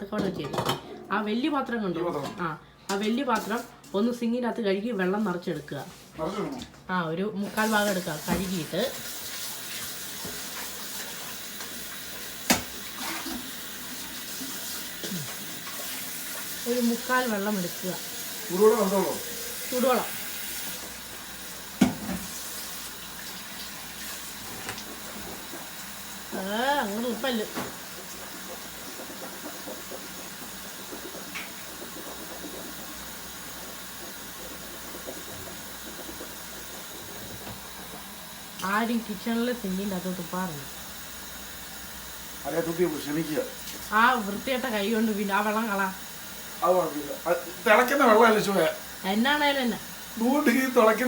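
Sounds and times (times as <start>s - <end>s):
tap running into a sink: 7.9s - 17.1s, 18.0s - 26.0s, 27.1s - 38.8s.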